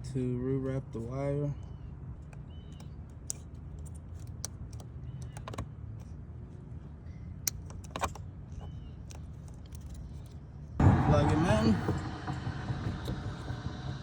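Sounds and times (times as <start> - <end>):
low hum: 10.7 - 14.0.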